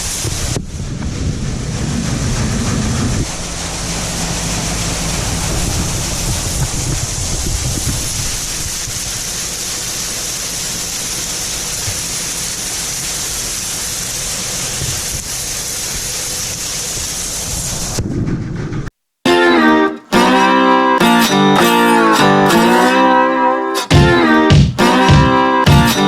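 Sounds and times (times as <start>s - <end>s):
combine harvester rushing noise: 0.0s - 18.9s.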